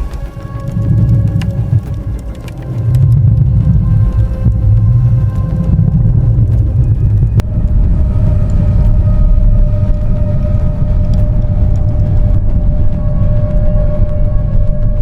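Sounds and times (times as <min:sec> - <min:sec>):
deep steady rumble: 0:00.0 - 0:15.0.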